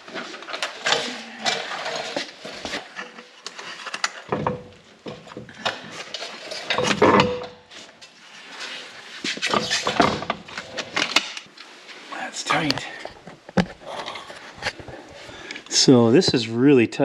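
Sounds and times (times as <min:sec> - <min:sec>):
metal scraping: 0:00.0 - 0:11.1.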